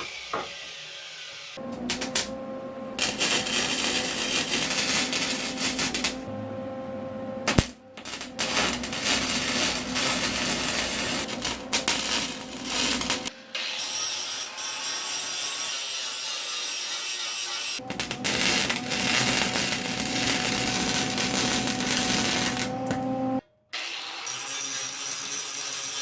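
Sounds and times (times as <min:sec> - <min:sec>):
welder hum: 0:00.0 - 0:26.0
welding arc crackling: 0:01.7 - 0:02.4, 0:03.0 - 0:06.3, 0:07.4 - 0:15.8, 0:17.6 - 0:23.0.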